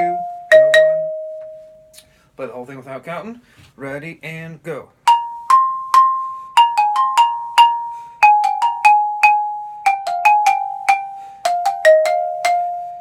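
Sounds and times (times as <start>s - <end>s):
xylophone melody: 0.0s - 2.0s, 5.1s - 13.0s.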